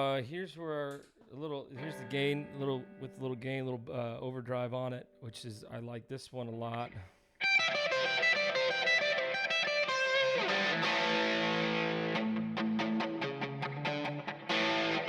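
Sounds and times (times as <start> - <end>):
overdriven electric guitar notes: 1.8 - 3.6, 6.8 - 15.0.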